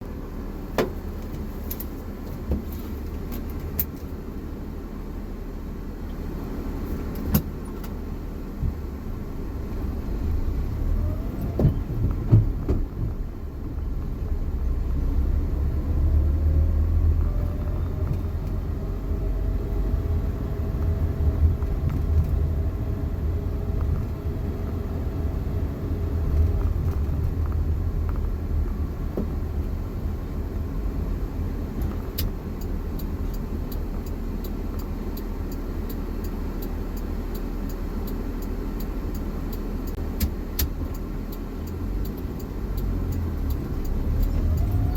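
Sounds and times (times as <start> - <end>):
vehicle drivetrain rumble: 0.0 - 44.9
regular ticking: 16.8 - 44.9.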